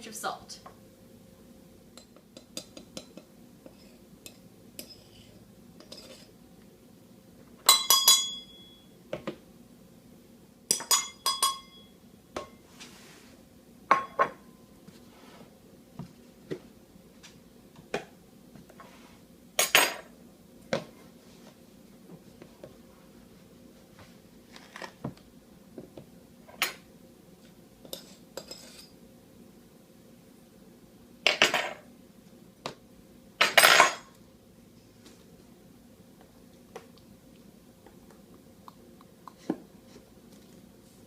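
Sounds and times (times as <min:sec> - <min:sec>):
utensils clinking against bowl: 0:02.0 - 0:06.3, 0:07.7 - 0:08.8, 0:10.7 - 0:12.5, 0:27.9 - 0:28.9.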